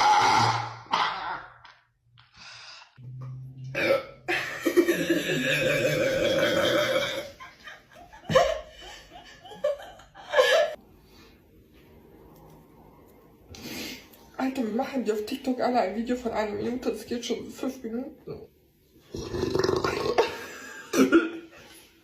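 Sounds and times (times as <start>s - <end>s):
person burping: 0.0s - 1.7s, 3.7s - 7.4s, 19.1s - 21.4s.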